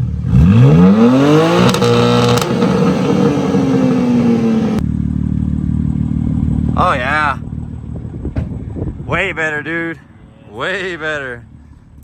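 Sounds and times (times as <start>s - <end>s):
car engine revving: 0.0s - 4.9s
car engine idling: 0.0s - 12.0s.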